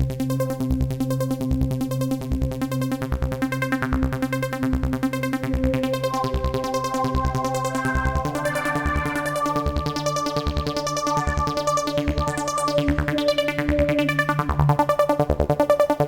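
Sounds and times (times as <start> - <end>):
synthesizer music with low beat: 3.2 - 16.0.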